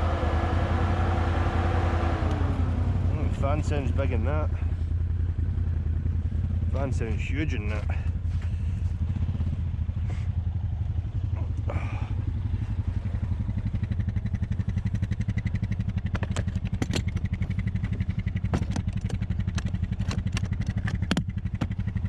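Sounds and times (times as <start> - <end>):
atv engine idling: 0.0 - 22.0
sharp clicks or knocks: 16.1 - 17.5, 18.5 - 21.8.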